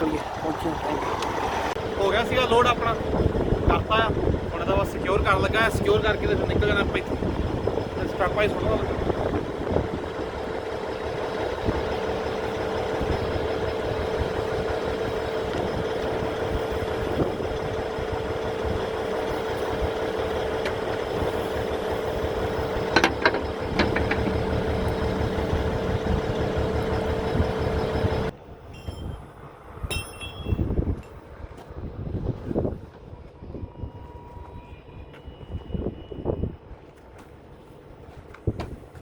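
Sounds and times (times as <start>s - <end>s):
diesel engine idling: 0.0s - 34.6s
constant hum: 0.0s - 39.0s.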